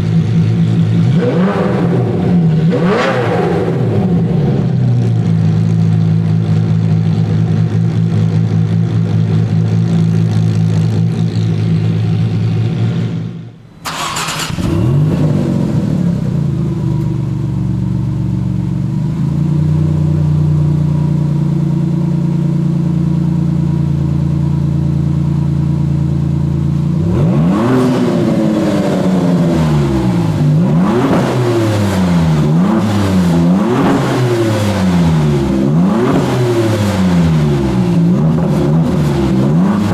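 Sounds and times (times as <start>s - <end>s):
engine throttle blips: 0.0s - 5.4s, 13.7s - 39.9s
sports car engine idling: 0.0s - 31.1s
engine cold start with rev flare: 13.7s - 17.4s.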